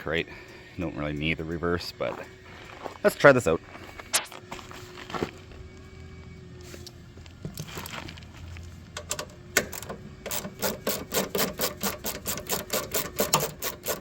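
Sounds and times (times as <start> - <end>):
ratchet wrench clicking: 9.0 - 14.0.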